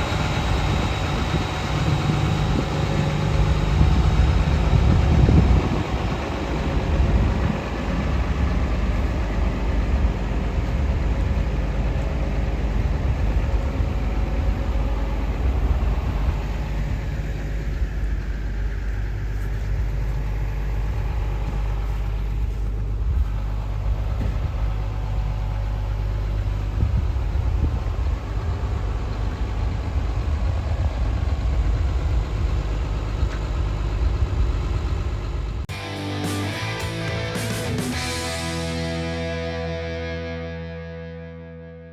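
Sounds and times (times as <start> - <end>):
excavator diesel engine running: 0.0 - 41.0.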